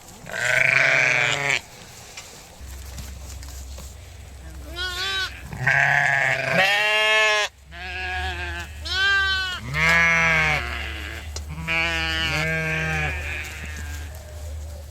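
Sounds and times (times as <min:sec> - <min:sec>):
steady low hum: 0:00.0 - 0:14.9
sheep bleating: 0:00.3 - 0:01.6, 0:04.6 - 0:14.2.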